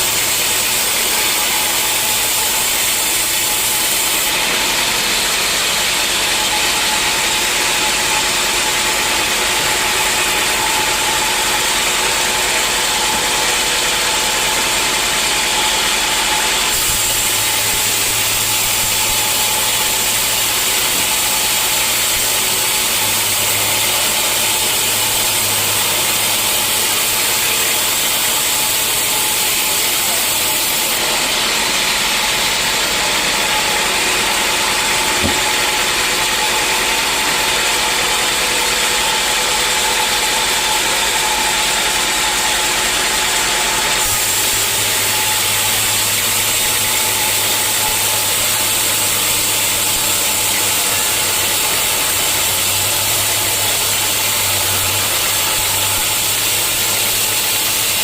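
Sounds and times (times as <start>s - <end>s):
sawmill saw running: 0.0s - 58.0s.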